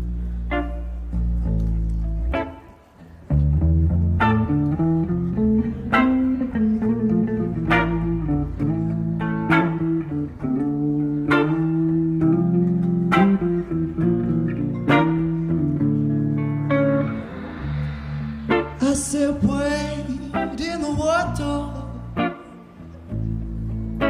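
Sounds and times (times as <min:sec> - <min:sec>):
guitar and bass groove: 0:00.0 - 0:24.0
vocals: 0:18.0 - 0:22.7.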